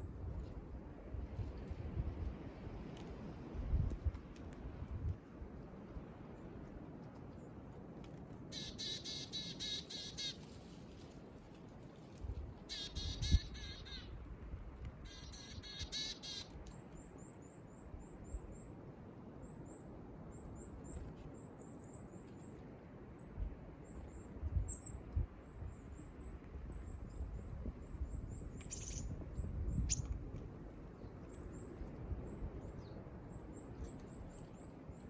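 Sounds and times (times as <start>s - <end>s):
harsh bird calls: 8.5s - 10.4s
small birds chirping: 8.6s - 10.6s, 15.0s - 18.7s, 23.2s - 35.0s.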